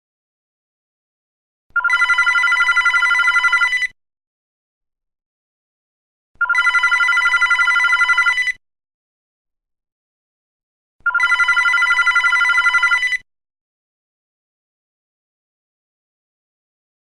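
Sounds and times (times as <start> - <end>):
electronic telephone ringing: 1.8 - 4.0, 6.4 - 8.6, 11.1 - 13.3.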